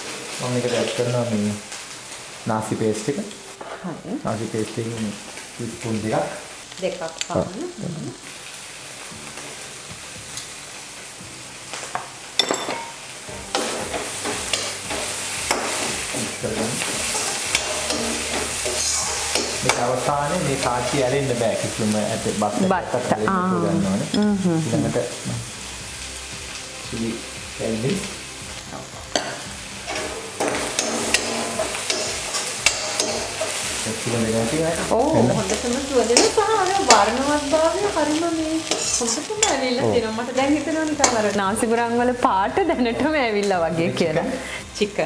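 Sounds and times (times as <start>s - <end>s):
paste sizzling in a frying pan: 0.0s - 45.0s
spoon stirring and scraping: 13.5s - 20.0s, 29.1s - 33.8s, 38.6s - 39.6s.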